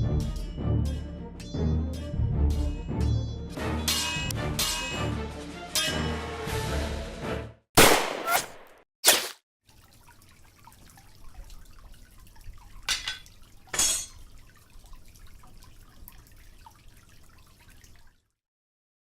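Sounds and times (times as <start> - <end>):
water dripping and trickling: 9.6 - 18.4.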